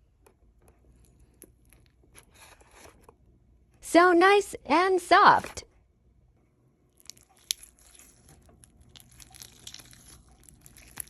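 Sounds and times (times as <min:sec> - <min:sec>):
slime squishing with crackles: 0:06.9 - 0:11.0.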